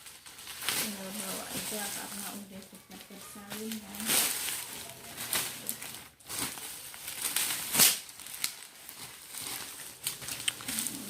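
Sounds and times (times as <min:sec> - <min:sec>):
plastic packaging crinkling: 0:00.0 - 0:11.0.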